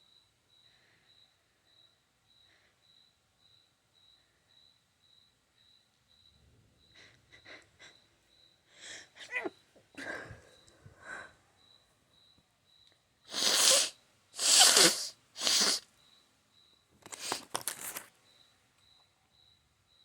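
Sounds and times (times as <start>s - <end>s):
fluttering nasal noise: 13.3s - 15.8s
person sneezing: 13.3s - 15.8s.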